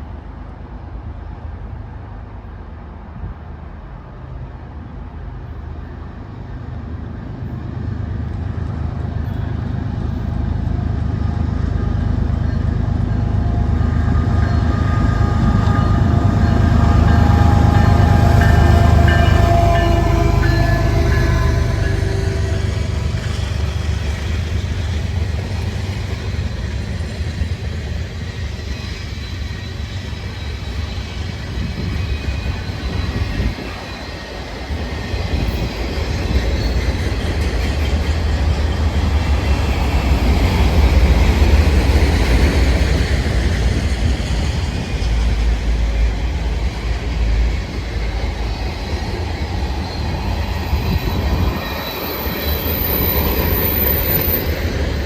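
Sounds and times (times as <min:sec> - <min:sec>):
freight train rumbling past: 0:00.0 - 0:55.0
high wheel squeal: 0:12.4 - 0:55.0
wheels clattering on rail: 0:15.2 - 0:55.0.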